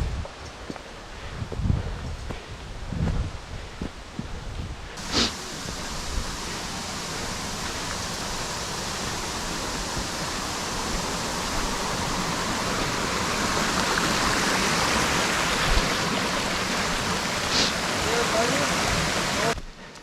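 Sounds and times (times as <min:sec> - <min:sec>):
stream water rushing: 0:05.0 - 0:19.6.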